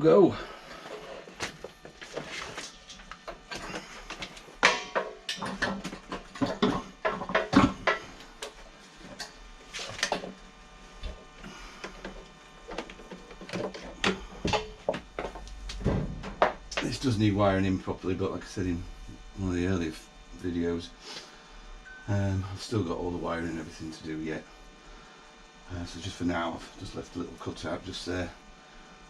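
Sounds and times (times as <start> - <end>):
air compressor knocking and scraping: 0.7 - 10.4, 11.8 - 17.1.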